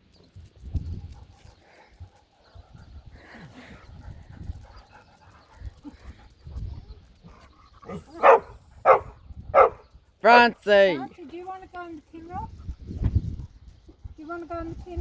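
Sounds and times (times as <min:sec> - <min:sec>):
dog barking: 0:07.8 - 0:09.8.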